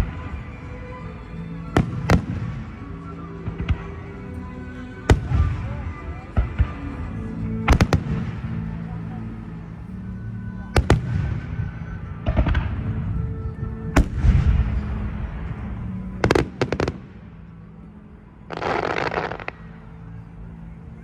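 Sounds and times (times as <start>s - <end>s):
music: 0.0s - 21.0s
fireworks crackling: 18.5s - 19.6s.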